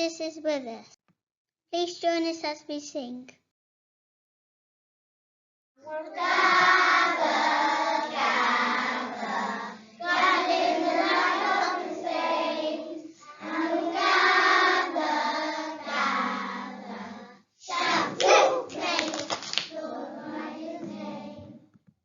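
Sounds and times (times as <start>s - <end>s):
children singing: 5.8s - 21.6s
sharp clapping: 17.8s - 19.8s.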